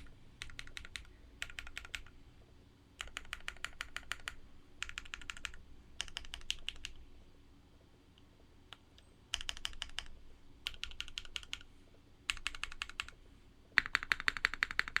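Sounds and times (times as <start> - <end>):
mechanical keyboard typing: 0.0 - 2.2, 3.0 - 7.0, 8.7 - 11.7, 12.3 - 13.2, 13.8 - 15.0.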